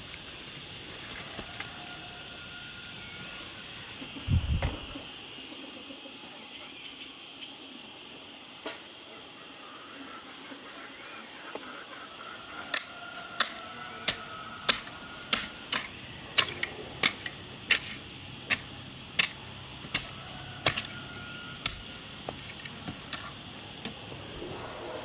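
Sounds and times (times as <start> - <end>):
sharp evenly paced knocks: 12.7 - 21.0.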